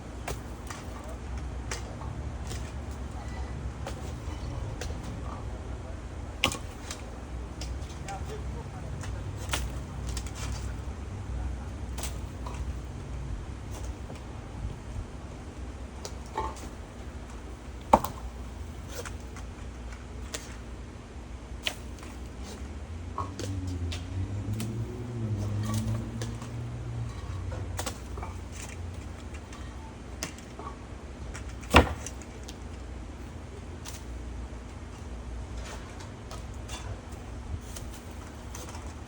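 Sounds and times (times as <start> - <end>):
low steady rumble: 0.0 - 39.0
low wavering hum: 21.9 - 31.1.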